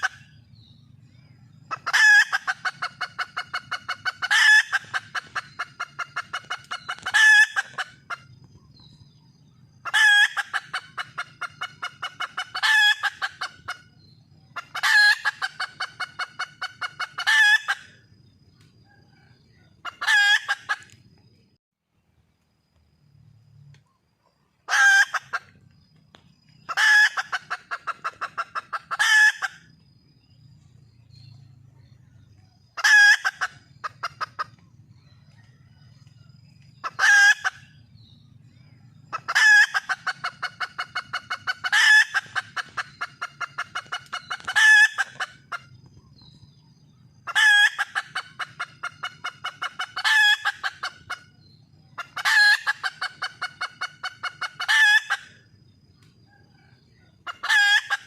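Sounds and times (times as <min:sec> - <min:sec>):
hen squawking and clucking: 0:00.0 - 0:00.3, 0:01.6 - 0:08.4, 0:09.8 - 0:18.0, 0:19.8 - 0:20.9, 0:24.7 - 0:25.6, 0:26.6 - 0:29.7, 0:32.8 - 0:34.6, 0:36.8 - 0:37.8, 0:39.1 - 0:45.7, 0:47.2 - 0:51.4, 0:52.0 - 0:55.4, 0:57.2 - 0:58.0.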